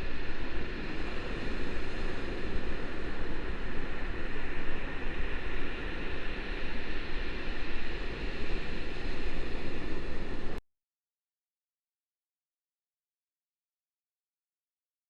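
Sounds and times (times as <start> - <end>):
rushing wind: 0.0 - 10.6.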